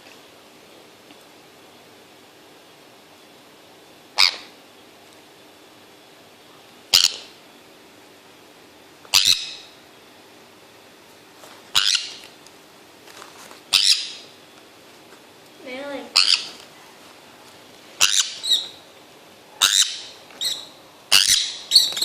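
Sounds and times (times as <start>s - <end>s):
parrot squawking: 4.2s - 4.5s, 6.9s - 7.3s, 9.1s - 9.7s, 11.7s - 12.2s, 13.7s - 14.3s, 16.1s - 16.6s, 18.0s - 18.8s, 19.6s - 22.0s.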